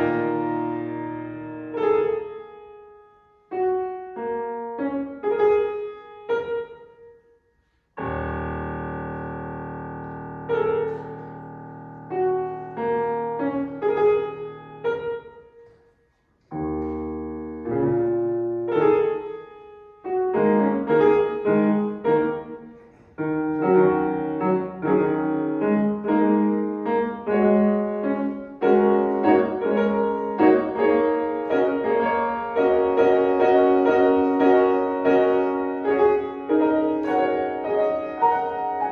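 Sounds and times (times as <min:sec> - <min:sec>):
solo piano playing: 0:00.0 - 0:06.9, 0:08.0 - 0:15.6, 0:16.6 - 0:38.9.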